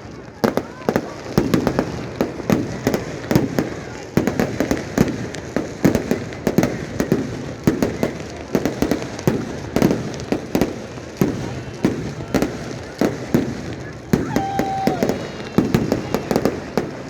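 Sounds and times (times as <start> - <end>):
fireworks bangs and pops: 0.0 - 17.0.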